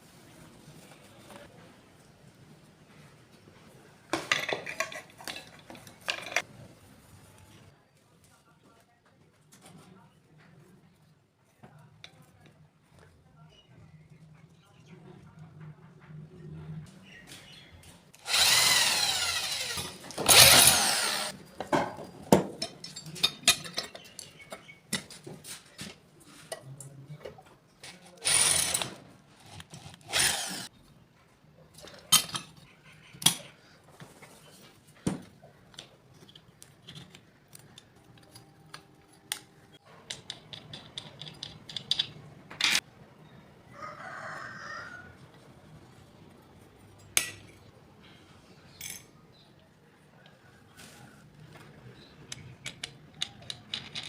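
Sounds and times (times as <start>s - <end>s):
power tool running in bursts: 18.2s - 21.3s, 30.1s - 30.7s
clicks and knocks of parts handled: 35.7s - 42.8s, 52.3s - 54.0s.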